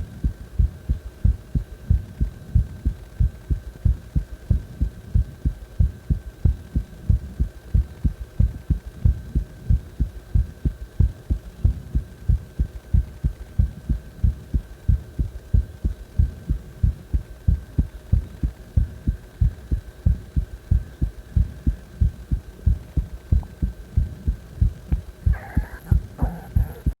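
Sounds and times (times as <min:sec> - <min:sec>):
heartbeat thumps: 0:00.0 - 0:27.0.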